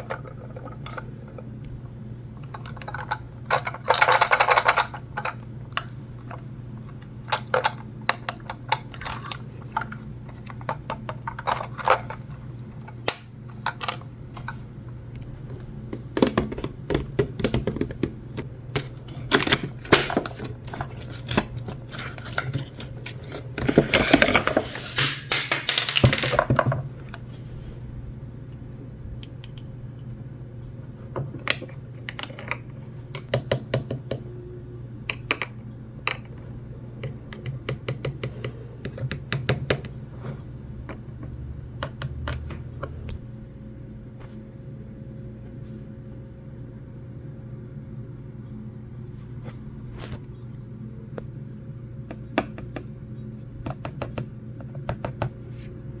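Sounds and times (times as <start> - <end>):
steady low hum: 0.0 - 56.0
scratchy handling noise: 18.8 - 25.4.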